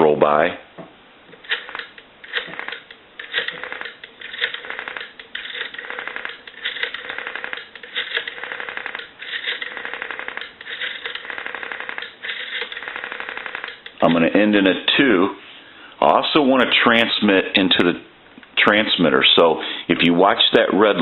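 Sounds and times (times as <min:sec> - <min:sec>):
rotary dial winding: 0:01.4 - 0:14.0
rotary telephone dial clicking: 0:01.4 - 0:14.0.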